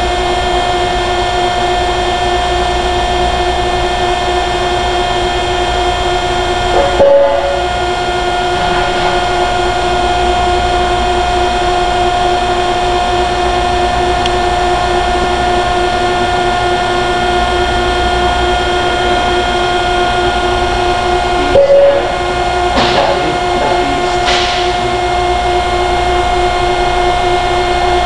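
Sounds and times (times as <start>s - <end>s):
industrial machine hum: 0.0s - 28.0s.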